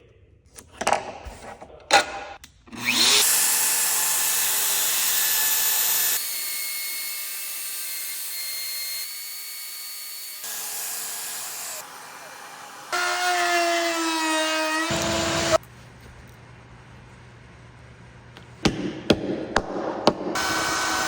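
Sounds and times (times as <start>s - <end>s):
router spindle cutting wood: 2.8s - 15.6s, 20.4s - 21.0s.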